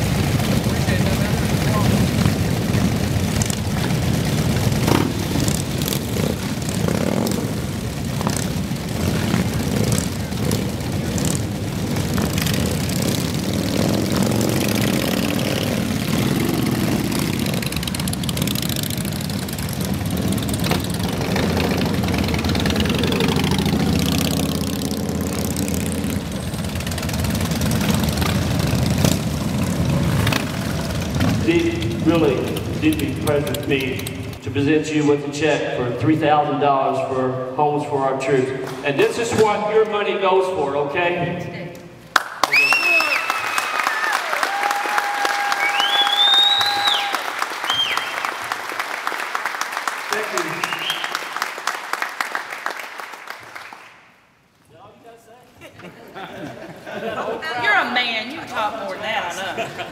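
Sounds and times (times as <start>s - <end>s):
motorcycle engines rumbling: 0.0s - 41.2s.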